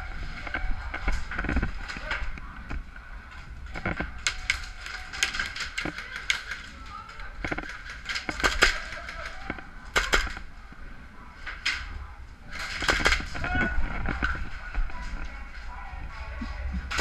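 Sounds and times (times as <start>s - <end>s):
airsoft guns firing: 7.6s - 10.5s, 12.5s - 13.4s.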